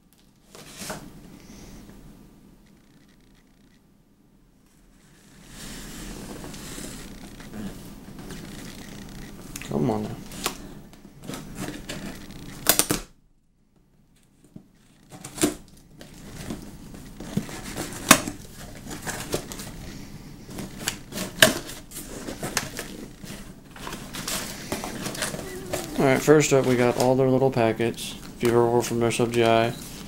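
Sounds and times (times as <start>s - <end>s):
cardboard box being unpacked: 14.8s - 19.8s, 20.5s - 27.1s.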